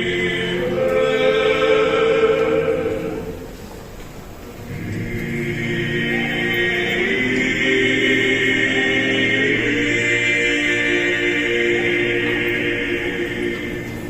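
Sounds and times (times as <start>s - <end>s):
a cappella choir singing: 0.0s - 3.5s, 4.7s - 14.0s.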